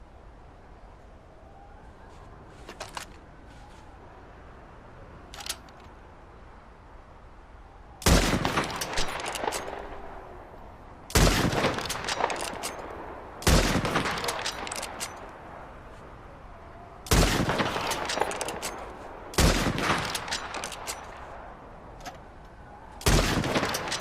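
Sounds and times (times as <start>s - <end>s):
rifle shots with echo: 8.0s - 10.0s, 11.1s - 15.0s, 17.1s - 21.1s, 23.0s - 24.0s.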